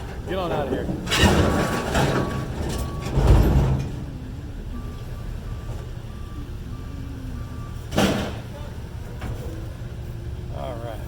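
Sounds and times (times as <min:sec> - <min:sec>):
steel poles scraping and clattering: 0:00.0 - 0:03.9
heavy metal clanging thud: 0:00.0 - 0:04.2, 0:07.9 - 0:08.5
reversing alarm beeping: 0:02.0 - 0:09.1.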